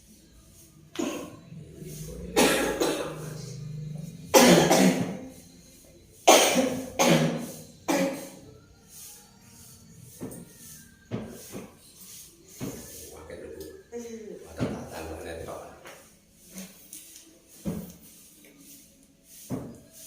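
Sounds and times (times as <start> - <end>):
woman coughing: 1.0 - 1.4, 2.3 - 3.5, 4.3 - 5.3, 6.3 - 8.4.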